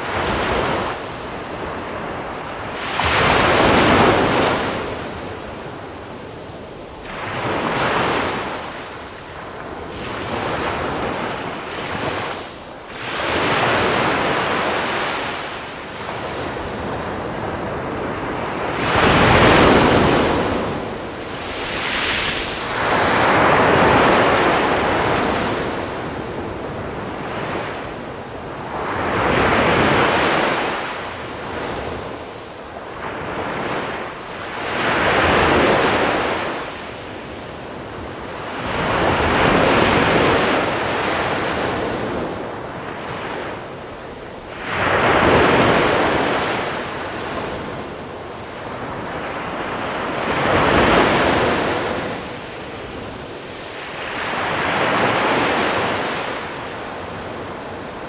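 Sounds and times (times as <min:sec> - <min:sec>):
waves breaking on pebble beach: 0:19.0 - 0:25.8.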